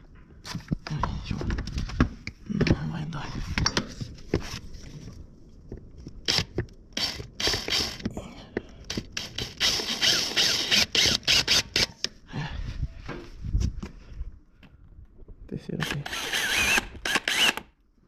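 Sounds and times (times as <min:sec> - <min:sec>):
drill bit clicking and scraping: 0:06.2 - 0:08.1, 0:08.8 - 0:12.2, 0:15.8 - 0:17.7
drill boring through plastic: 0:06.3 - 0:08.1, 0:08.9 - 0:11.9, 0:15.8 - 0:17.7.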